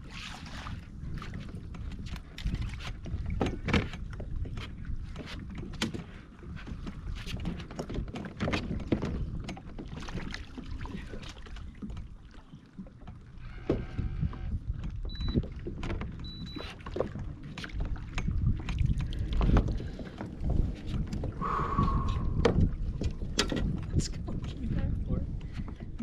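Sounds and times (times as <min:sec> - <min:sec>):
kayak and gear knocking: 0:01.3 - 0:10.6, 0:13.0 - 0:26.0
low steady rumble: 0:17.3 - 0:26.0.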